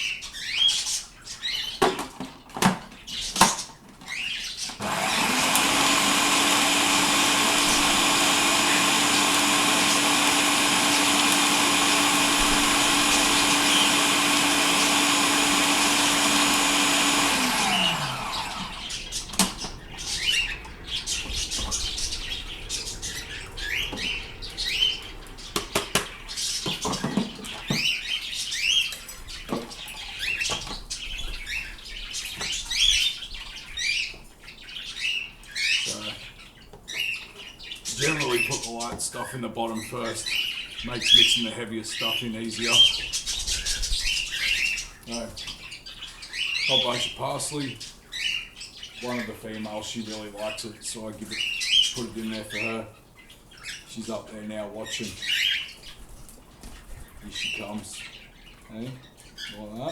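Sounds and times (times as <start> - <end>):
birds chirping: 0.0 - 59.9
kitchen chopper motor running: 4.8 - 27.5.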